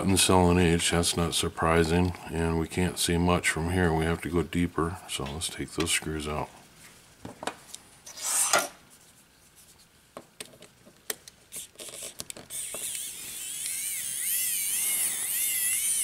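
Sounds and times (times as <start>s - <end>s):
electric screwdriver whine: 12.0s - 16.0s.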